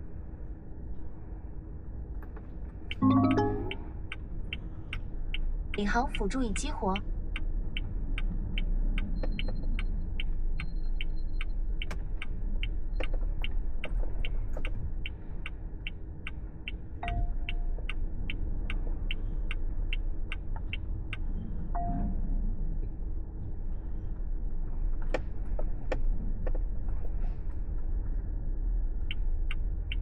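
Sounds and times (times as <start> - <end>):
road noise rumble: 0.0 - 30.0
turn signal ticking: 2.9 - 22.0, 28.9 - 30.0
short beeps: 3.0 - 3.9, 21.8 - 22.1.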